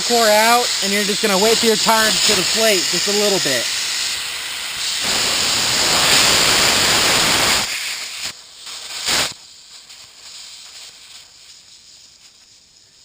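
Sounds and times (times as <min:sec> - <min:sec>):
air hissing from tire valve: 0:00.0 - 0:13.0.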